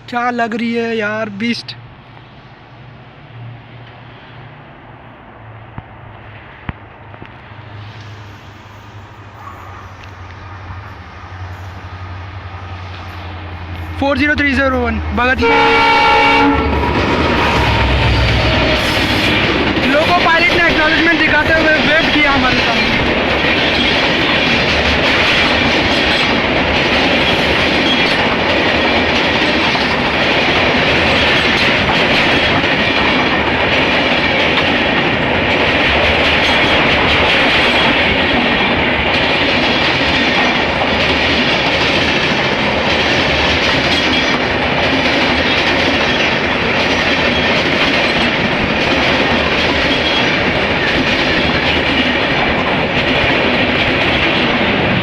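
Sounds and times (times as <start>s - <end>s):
train passing at speed: 0.0s - 55.0s.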